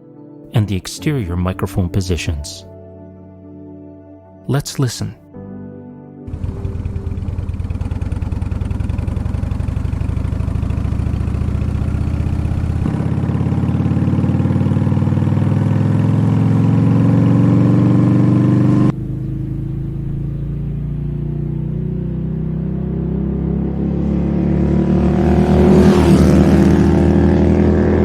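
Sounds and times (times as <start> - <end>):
motorcycle engine revving: 6.3 - 28.0.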